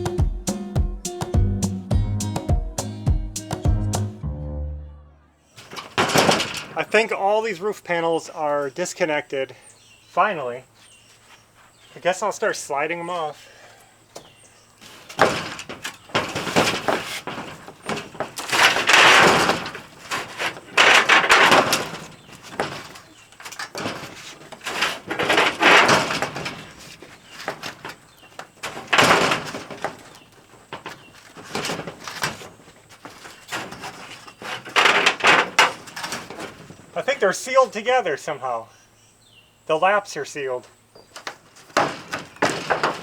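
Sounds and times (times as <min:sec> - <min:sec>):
roof panels scraping together: 0:05.5 - 0:09.2, 0:10.1 - 0:38.6, 0:39.8 - 0:43.0
knocks and clatter: 0:05.6 - 0:07.1, 0:14.2 - 0:37.2, 0:41.0 - 0:43.0.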